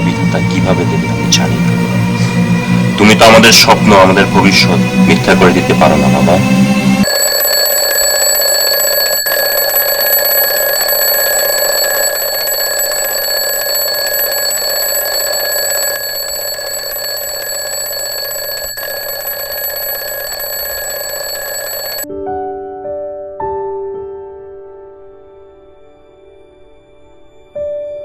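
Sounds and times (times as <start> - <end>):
alarm clock ringing: 0.0 - 6.4, 7.0 - 22.0.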